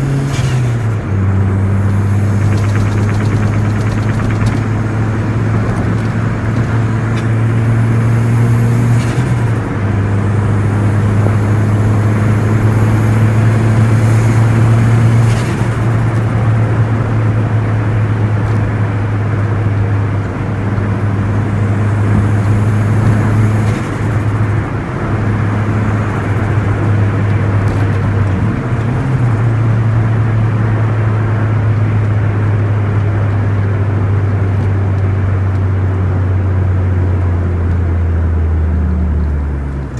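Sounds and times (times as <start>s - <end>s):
car engine droning: 0.0s - 39.9s
road noise: 0.0s - 39.9s.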